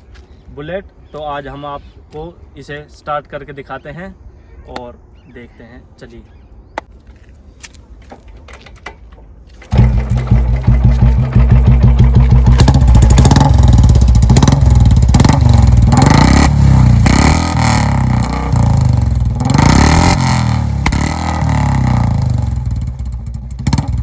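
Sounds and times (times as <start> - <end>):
motorcycle engine revving: 9.6 - 24.0.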